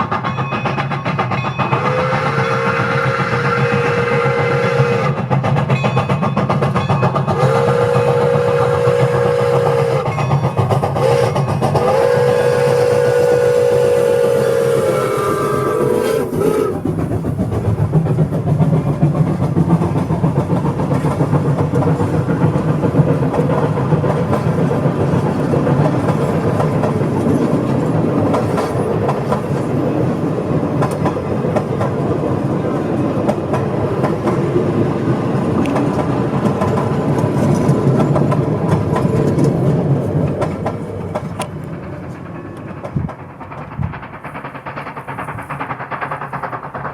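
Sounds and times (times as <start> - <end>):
steam locomotive whistle: 0.0 - 5.4, 7.2 - 16.9
train wheels clickety-clack: 0.0 - 46.9.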